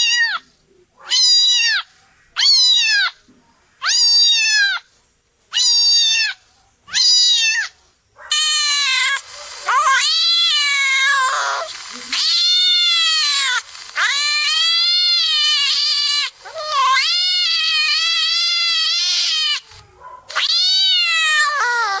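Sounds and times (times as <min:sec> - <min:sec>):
cat meowing: 0:01.0 - 0:03.2, 0:03.8 - 0:04.8, 0:05.5 - 0:22.0.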